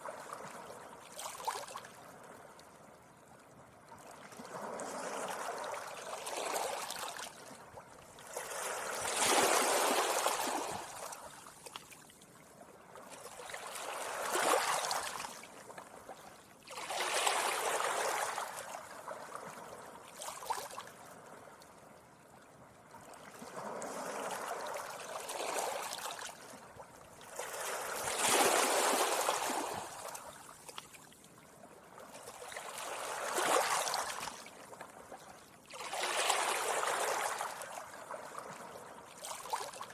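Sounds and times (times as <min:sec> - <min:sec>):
sea waves breaking on beach: 0:08.2 - 0:11.4, 0:13.0 - 0:15.5, 0:16.7 - 0:21.1, 0:23.3 - 0:26.4, 0:27.3 - 0:30.4, 0:32.2 - 0:34.4, 0:35.7 - 0:39.9.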